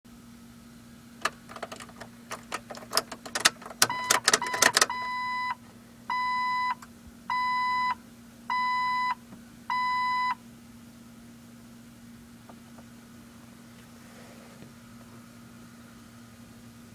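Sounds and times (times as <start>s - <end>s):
keys jangling: 1.2s - 4.9s
car warning chime beeping: 1.2s - 10.4s.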